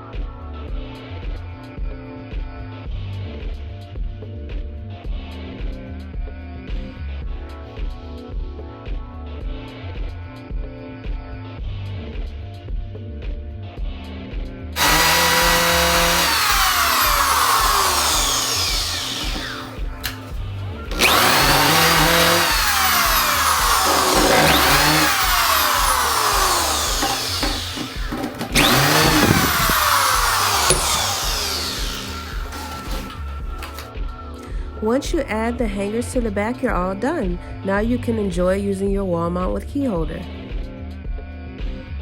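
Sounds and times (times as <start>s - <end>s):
background music with steady beat: 0.0s - 42.0s
power drill running: 14.8s - 33.9s.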